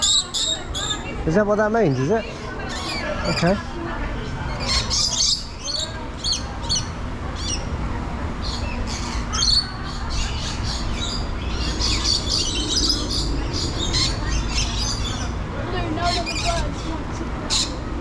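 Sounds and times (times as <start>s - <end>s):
lorikeets screeching: 0.0s - 3.6s, 4.5s - 7.7s, 8.4s - 15.4s, 16.0s - 17.8s.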